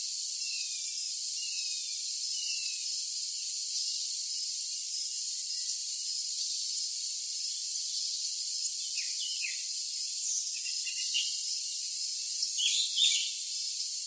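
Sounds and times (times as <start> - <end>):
crickets chirring: 0.0 - 14.0
songbird calls: 1.4 - 2.8, 8.9 - 9.7, 10.3 - 11.4, 12.6 - 13.4.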